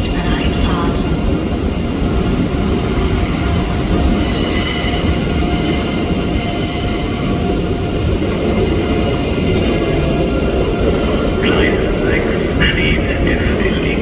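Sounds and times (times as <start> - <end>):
train rumble: 0.0 - 14.0
wheels squealing on rails: 2.6 - 12.6.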